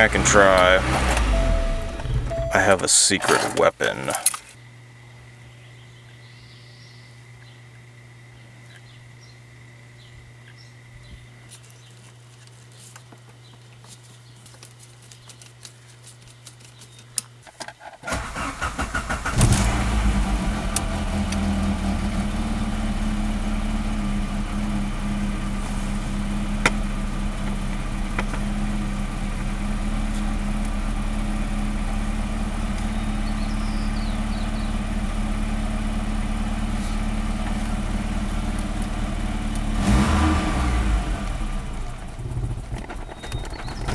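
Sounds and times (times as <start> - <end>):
low hum: 0.0 - 3.3
car engine cranking and idling: 0.0 - 4.5, 18.1 - 43.9.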